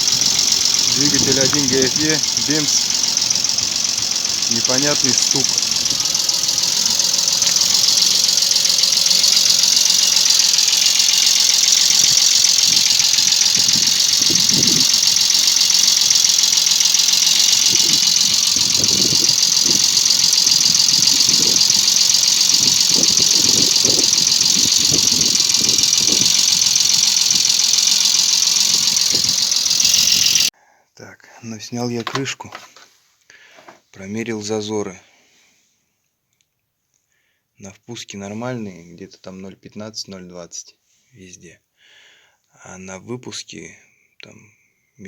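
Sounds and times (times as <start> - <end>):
engine running: 0.0 - 30.5
metallic ticking knock: 0.0 - 30.5.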